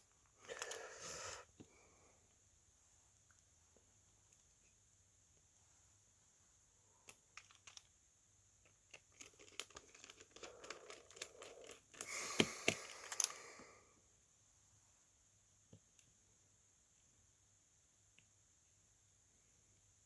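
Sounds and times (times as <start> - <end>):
crinkling rustle: 8.9 - 12.1.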